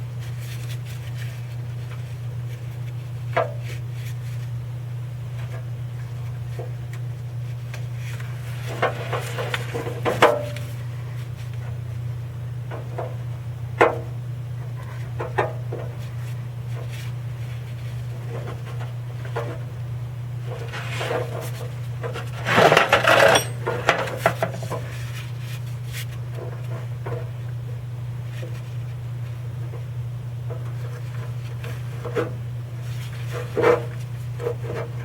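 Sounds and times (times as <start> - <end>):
steady low hum: 0.0 - 35.0
hand tools knocking and clinking: 22.9 - 24.1.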